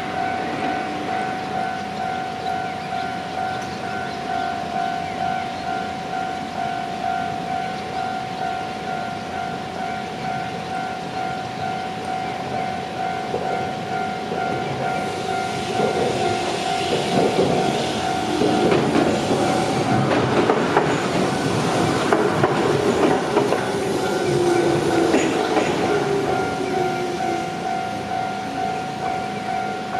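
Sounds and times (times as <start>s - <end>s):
electric train passing: 0.0s - 29.9s
level crossing alarm ringing: 0.0s - 29.9s
wheels clacking over rail joints: 13.0s - 29.9s.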